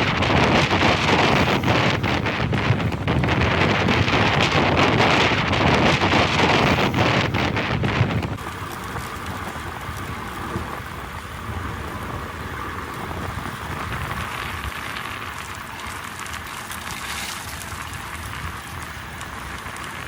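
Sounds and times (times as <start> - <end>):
wind rushing: 0.0 - 8.4
bicycle tyres on road: 0.0 - 20.0.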